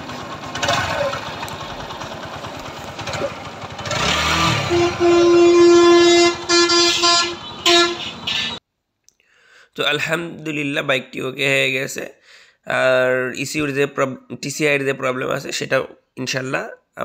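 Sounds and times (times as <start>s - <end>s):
motorcycle engine running and revving: 0.0s - 8.5s
motorcycle horn toots: 3.9s - 8.6s.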